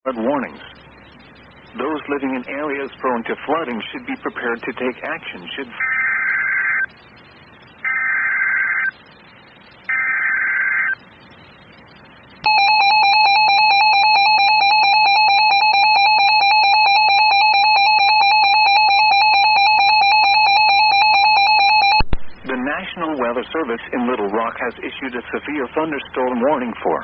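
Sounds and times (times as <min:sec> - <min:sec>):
buzzy data warble: 0:00.9 - 0:22.0
two-tone attention signal: 0:12.5 - 0:22.0.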